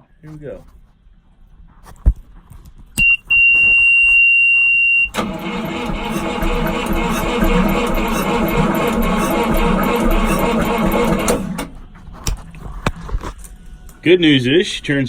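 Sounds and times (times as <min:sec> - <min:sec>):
high-pitched beep: 0:03.0 - 0:04.0
diesel engine cranking: 0:05.1 - 0:11.9.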